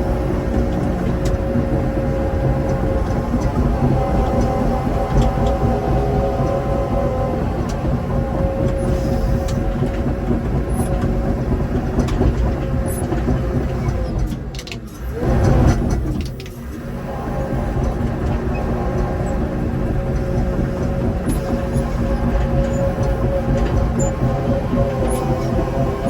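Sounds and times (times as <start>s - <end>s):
heavy diesel engine running: 0.0s - 26.0s.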